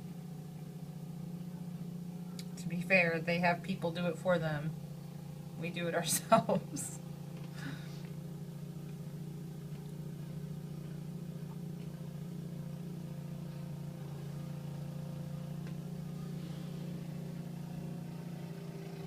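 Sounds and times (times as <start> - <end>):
snowblower engine running: 0.0 - 19.0.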